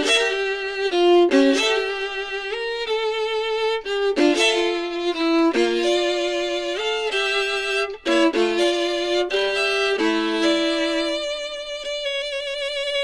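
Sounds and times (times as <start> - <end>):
solo violin music: 0.0 - 13.0.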